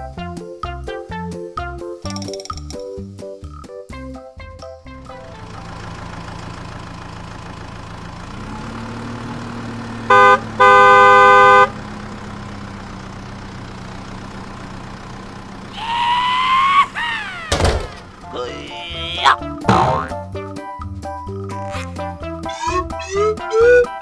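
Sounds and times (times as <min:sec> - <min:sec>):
cartoon engine hum: 0:04.9 - 0:20.5, 0:21.4 - 0:24.0
cartoon horn honking: 0:10.0 - 0:11.8, 0:18.3 - 0:20.2, 0:21.5 - 0:24.0.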